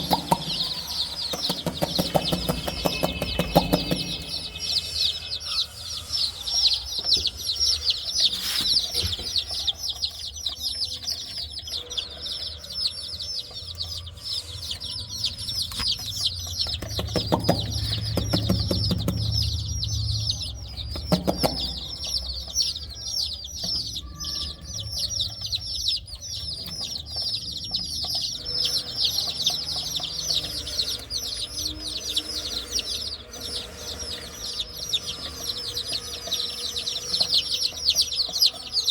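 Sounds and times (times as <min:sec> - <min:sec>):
chicks peeping: 0:00.0 - 0:38.9.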